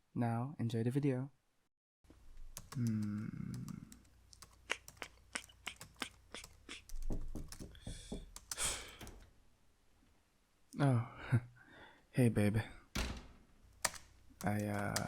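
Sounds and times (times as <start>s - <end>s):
soft breathy noises: 2.8s - 9.4s.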